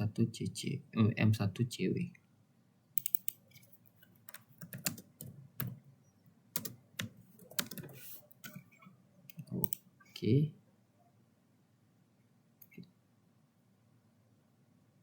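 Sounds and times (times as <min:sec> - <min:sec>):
computer keyboard typing: 0:03.0 - 0:03.4, 0:04.2 - 0:05.8, 0:06.6 - 0:08.6.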